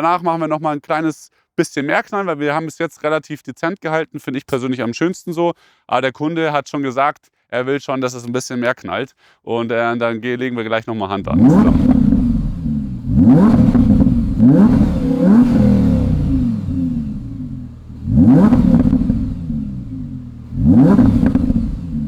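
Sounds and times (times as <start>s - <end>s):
car engine revving: 11.3s - 22.0s.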